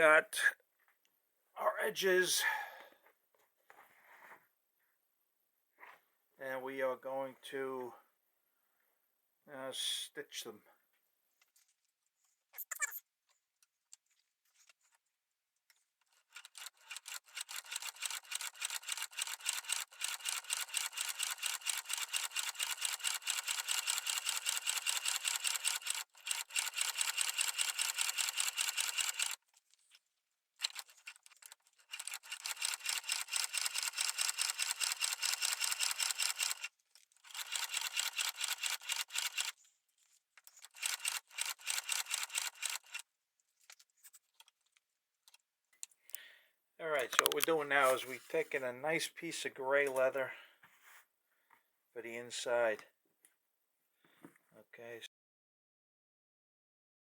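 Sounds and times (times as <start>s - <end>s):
sewing machine stitching: 16.1s - 29.6s, 30.6s - 39.6s, 40.5s - 43.0s.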